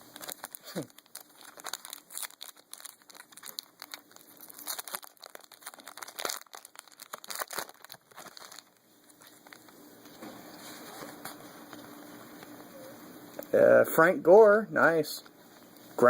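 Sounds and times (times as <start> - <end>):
plastic wrapper crinkling: 0.0 - 12.7.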